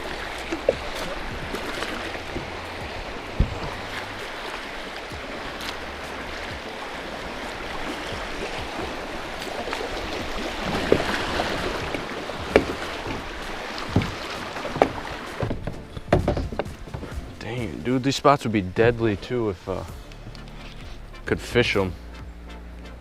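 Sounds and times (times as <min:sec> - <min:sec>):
river water rushing: 0:00.0 - 0:21.1
sharp knocks: 0:11.9 - 0:17.2.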